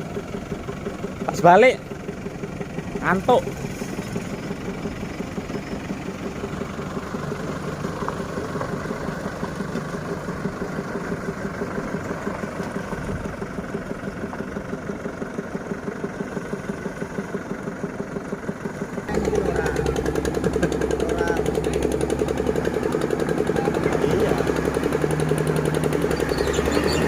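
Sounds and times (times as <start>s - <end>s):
diesel engine idling: 0.0s - 27.0s.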